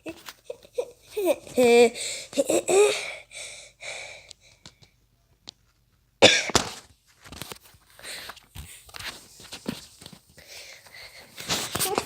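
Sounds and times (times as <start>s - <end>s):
person coughing: 6.2s - 6.6s.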